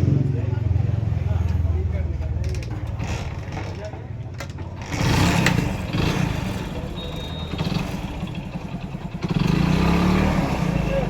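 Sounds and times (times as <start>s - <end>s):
motorcycle engine revving: 4.8s - 11.0s.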